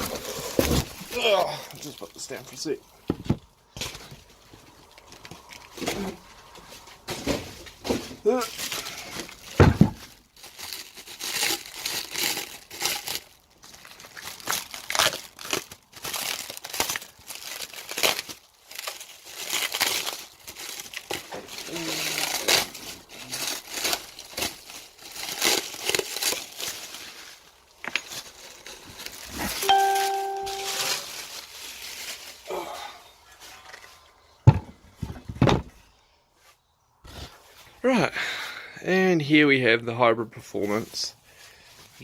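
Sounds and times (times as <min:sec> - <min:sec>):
packing material crinkling and tearing: 0:00.0 - 0:02.8, 0:03.8 - 0:34.1
rustling: 0:16.4 - 0:32.5.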